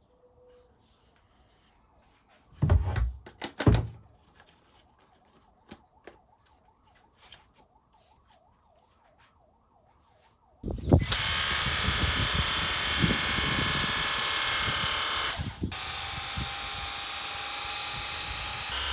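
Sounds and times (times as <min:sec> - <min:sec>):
plastic parts knocking: 0:02.6 - 0:04.1.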